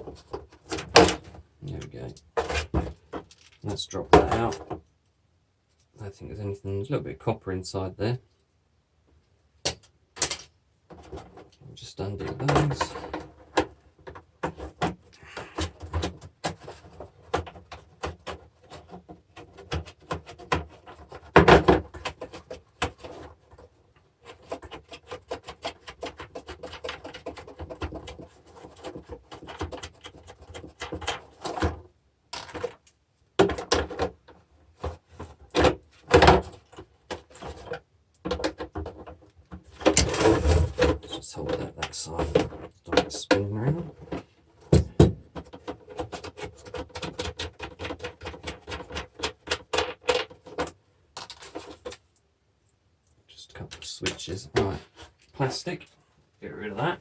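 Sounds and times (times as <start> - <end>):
metal and plastic parts knocking: 12.2 - 52.1.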